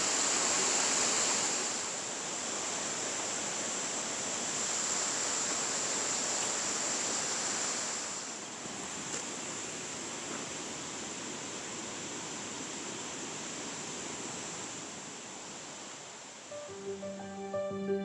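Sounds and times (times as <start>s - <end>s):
waterfall rushing hiss: 0.0s - 10.2s.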